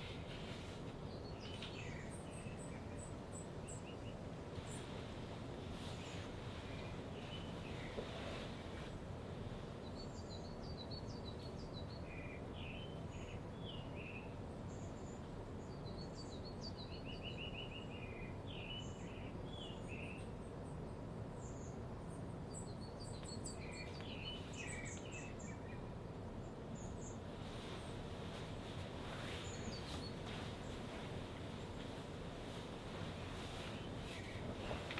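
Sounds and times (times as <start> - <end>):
small birds chirping: 0.0 - 5.1, 5.7 - 8.9, 9.6 - 34.9
steady low background noise: 0.0 - 34.9.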